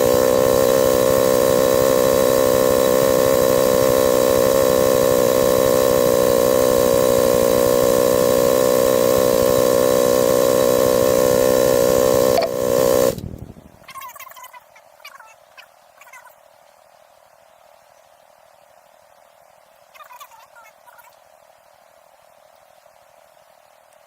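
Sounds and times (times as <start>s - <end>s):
motorcycle engine idling: 0.0s - 13.6s.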